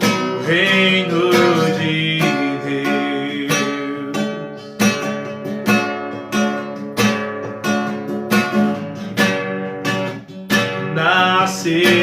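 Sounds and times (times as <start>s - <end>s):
acoustic guitar strumming: 0.0s - 12.0s
person singing worship song: 0.4s - 4.8s, 10.9s - 12.0s.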